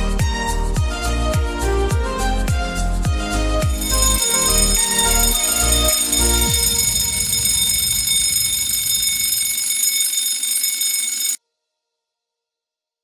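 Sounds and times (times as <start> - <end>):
alarm clock bell ringing: 3.7 - 11.4.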